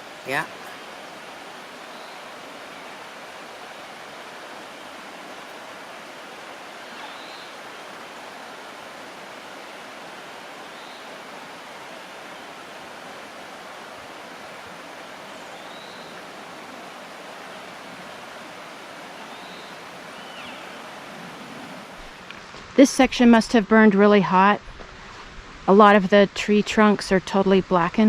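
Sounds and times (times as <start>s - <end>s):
rushing creek water: 0.0s - 27.9s.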